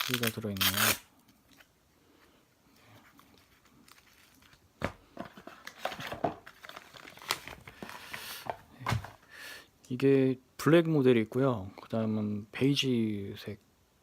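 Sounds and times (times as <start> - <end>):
packaging rustling: 3.2 - 9.2.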